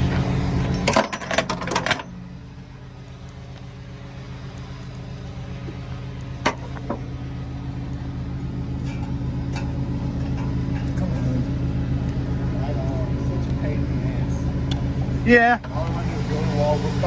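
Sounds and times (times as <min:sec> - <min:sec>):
truck engine idling: 0:00.0 - 0:17.0
metallic knocks and rattles: 0:00.6 - 0:02.2, 0:08.7 - 0:11.7.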